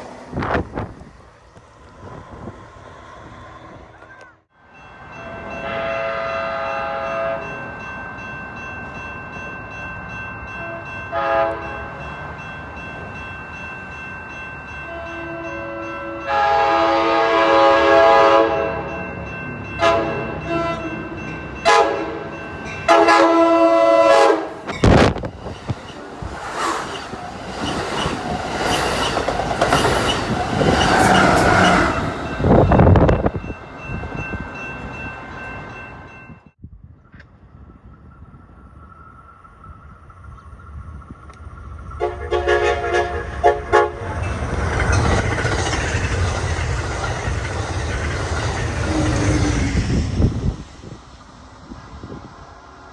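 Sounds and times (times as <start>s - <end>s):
train passing with rush: 0.0s - 52.9s
train air horn blasts: 5.6s - 7.5s, 10.6s - 11.8s, 14.9s - 18.9s, 19.8s - 21.0s, 21.6s - 22.3s, 22.9s - 24.7s, 42.0s - 44.2s
wheels clattering on rails: 24.6s - 36.1s, 37.0s - 52.1s.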